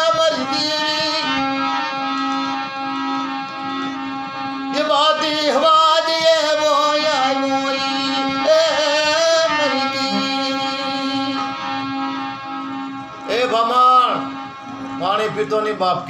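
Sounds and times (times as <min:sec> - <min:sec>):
steady drone: 0:00.0 - 0:16.0
person singing wavering notes: 0:04.7 - 0:14.4.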